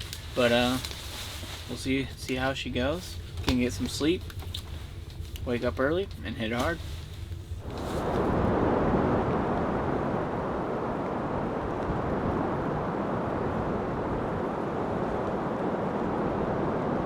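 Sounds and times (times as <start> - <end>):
strong wind rushing: 7.5 - 17.0.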